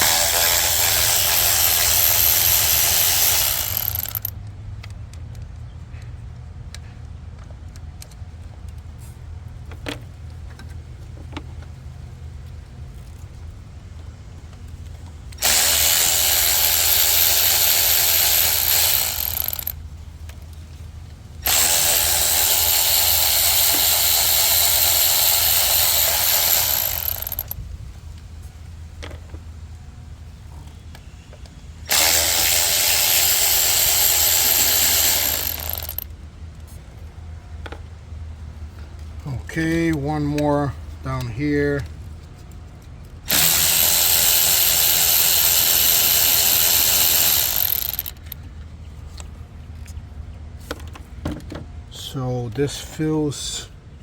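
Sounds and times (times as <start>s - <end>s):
power tool motor whine: 0.0s - 4.3s, 15.4s - 19.7s, 21.4s - 27.6s, 31.9s - 36.0s, 43.3s - 48.4s.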